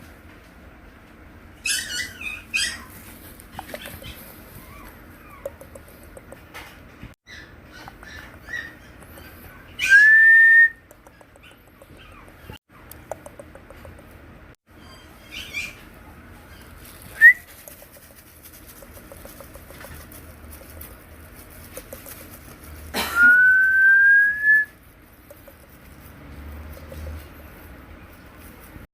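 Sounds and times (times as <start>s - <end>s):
puppy whining: 1.5s - 6.5s, 7.2s - 14.0s, 14.7s - 18.2s.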